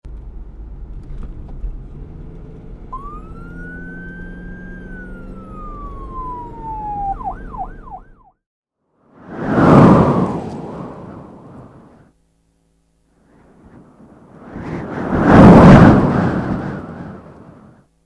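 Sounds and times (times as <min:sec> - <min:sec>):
siren-like whistling tone: 0:02.9 - 0:08.4
low rumble: 0:09.2 - 0:12.0, 0:13.4 - 0:17.8.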